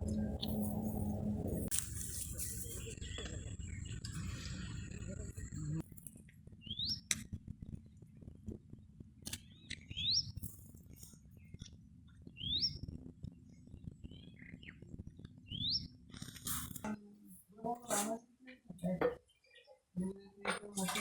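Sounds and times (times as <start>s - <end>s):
scattered clicks: 9.2s - 10.6s
bird whistling upward notes: 12.4s - 12.8s.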